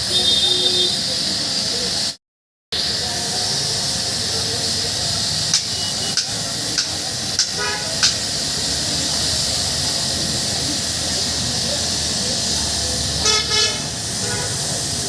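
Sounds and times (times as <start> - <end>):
steady hiss: 0.1 - 2.2, 2.8 - 15.0
sharp clicks: 5.5 - 8.2.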